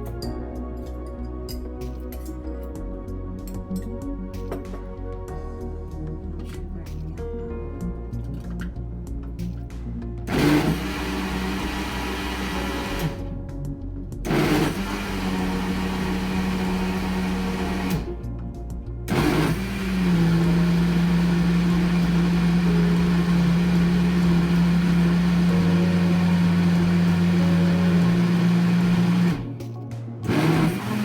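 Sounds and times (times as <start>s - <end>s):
kitchen blender running: 10.3s - 13.2s, 14.3s - 18.2s, 19.1s - 29.5s, 30.3s - 31.0s.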